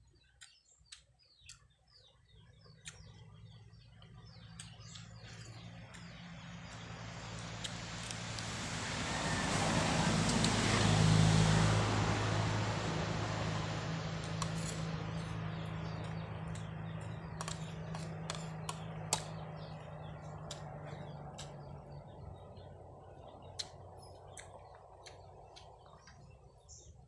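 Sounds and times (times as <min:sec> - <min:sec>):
motor vehicle passing: 0:03.3 - 0:26.8
sharp clicks: 0:15.9 - 0:20.7.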